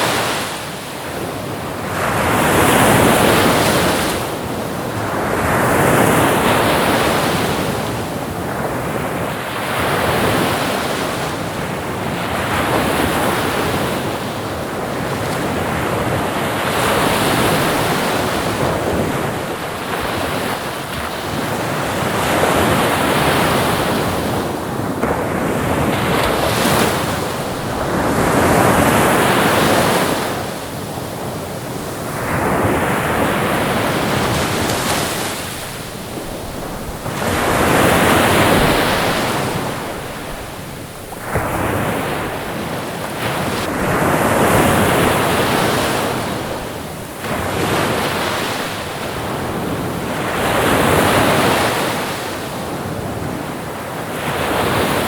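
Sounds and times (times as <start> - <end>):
ocean waves breaking: 0.0 - 55.0.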